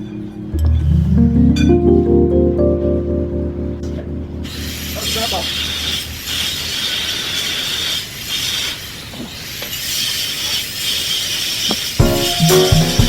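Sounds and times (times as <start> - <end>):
background music: 0.0 - 5.6, 12.0 - 13.0
steady hissing noise: 4.4 - 13.0.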